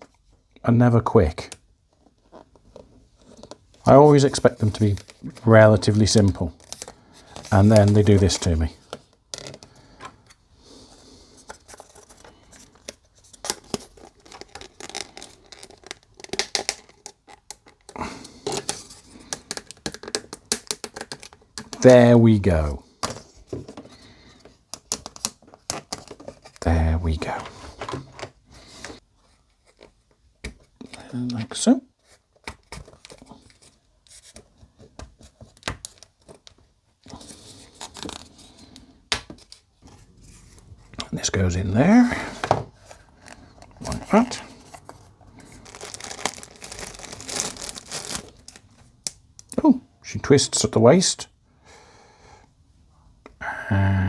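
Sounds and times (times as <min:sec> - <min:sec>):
plastic parts clicking together: 0:12.8 - 0:21.9
plastic scraping: 0:42.2 - 0:48.9
rustling: 0:42.8 - 0:49.0.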